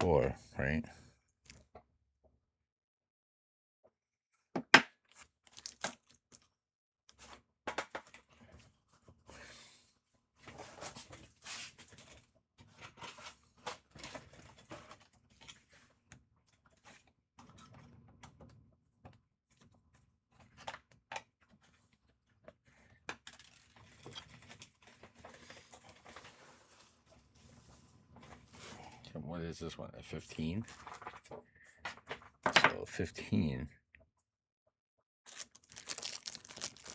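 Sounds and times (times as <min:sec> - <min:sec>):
packaging rustling: 0:35.3 - 0:36.9.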